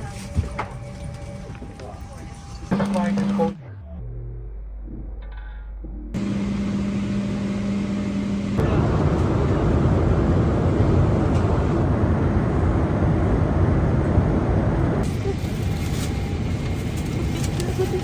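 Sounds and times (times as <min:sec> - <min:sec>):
vehicle noise: 0:06.2 - 0:18.0.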